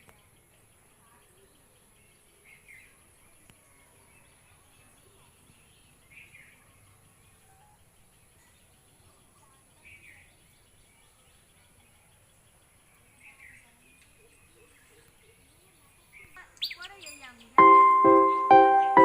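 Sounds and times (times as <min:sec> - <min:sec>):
faint bird calls: 0:13.0 - 0:17.6.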